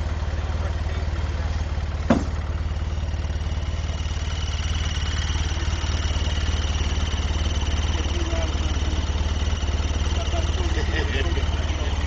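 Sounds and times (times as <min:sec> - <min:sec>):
vehicle engine idling: 0:00.0 - 0:12.0
sharp knock: 0:02.1 - 0:02.5.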